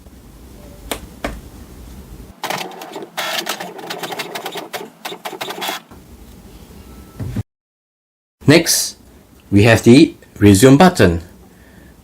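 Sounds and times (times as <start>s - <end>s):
inkjet printer clattering: 2.4s - 5.9s.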